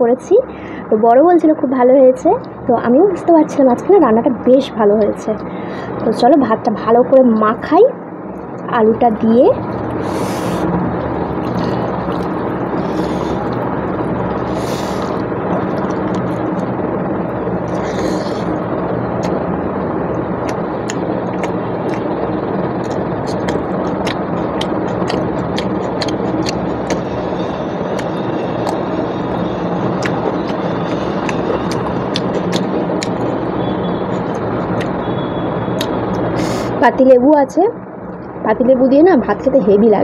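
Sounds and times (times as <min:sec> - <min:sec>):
rice being chewed: 0:09.7 - 0:16.8, 0:17.6 - 0:18.6, 0:20.4 - 0:22.1, 0:22.7 - 0:34.9.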